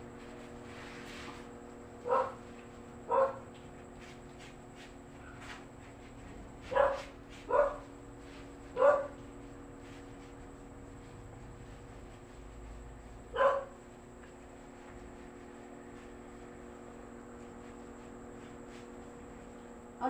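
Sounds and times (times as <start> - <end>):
steady hum: 0.0 - 20.0
dog barking: 2.0 - 2.4, 3.1 - 3.4, 6.7 - 7.8, 8.8 - 9.1, 13.3 - 13.7.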